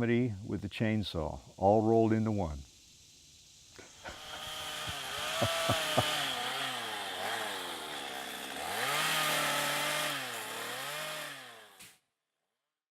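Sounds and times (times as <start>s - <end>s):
chainsaw engine revving: 3.8s - 12.0s.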